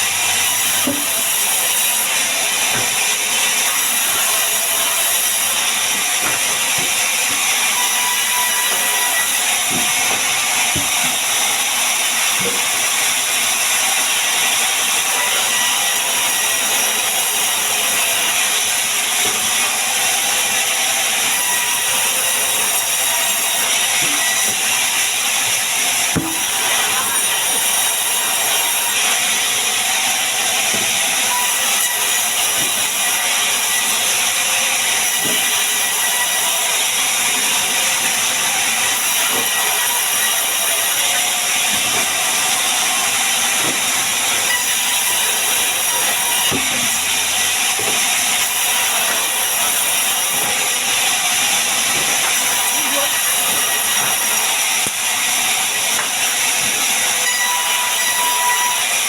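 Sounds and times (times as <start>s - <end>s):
power tool hissing on wood: 43.3s - 59.0s.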